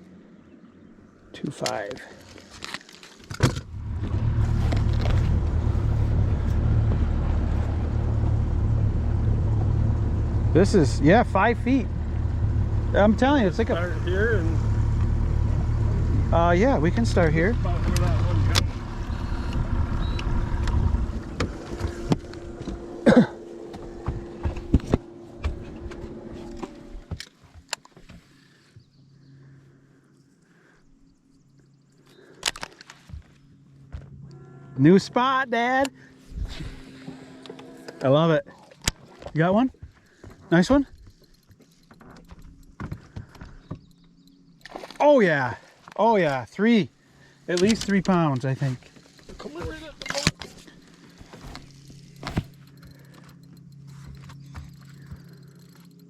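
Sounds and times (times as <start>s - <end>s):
gear knocks and clicks: 1.5s - 10.7s, 17.0s - 23.0s, 37.4s - 45.0s, 47.5s - 56.0s
outboard motor running: 3.6s - 29.3s, 33.0s - 56.0s.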